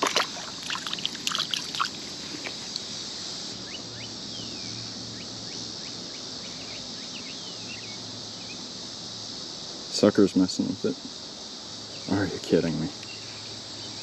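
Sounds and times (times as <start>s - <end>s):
fish knocking and splashing: 0.0s - 2.0s
crickets chirring: 0.0s - 14.0s.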